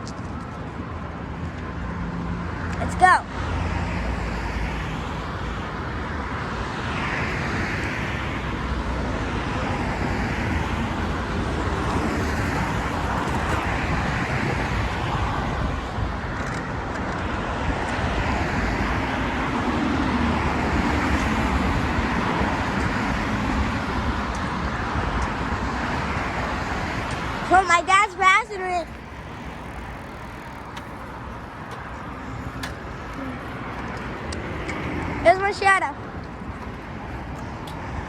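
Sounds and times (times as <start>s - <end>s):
bicycle tyre noise on road: 0.0s - 38.0s
wind on microphone: 6.9s - 27.5s.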